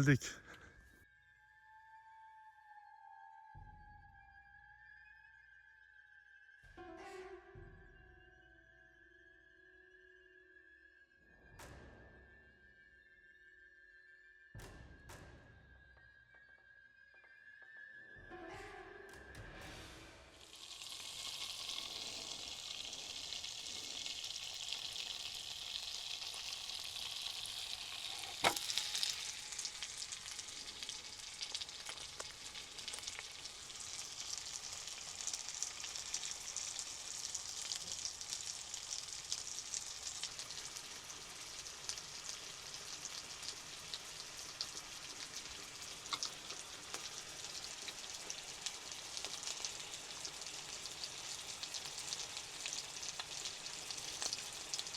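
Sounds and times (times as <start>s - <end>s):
food sizzling in a pan: 19.8s - 54.9s.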